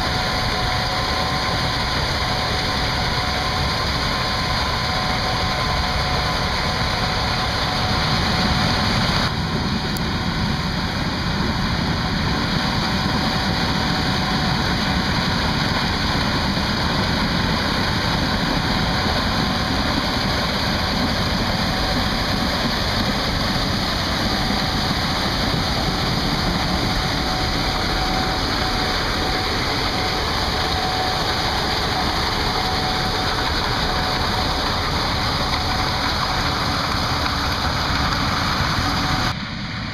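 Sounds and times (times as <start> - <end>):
combine harvester droning: 0.0 - 39.9.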